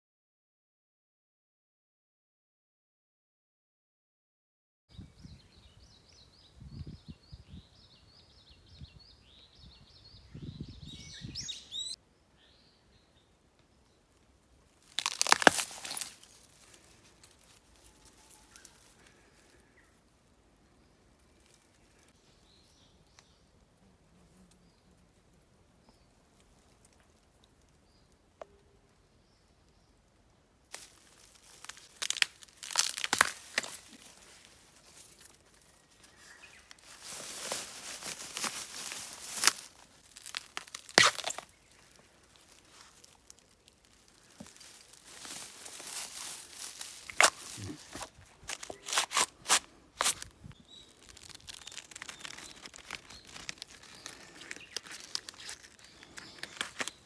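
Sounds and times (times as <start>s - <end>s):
faint bird chirps: 4.9s - 13.3s
aluminium foil crinkling: 14.7s - 20.2s, 30.7s - 57.0s.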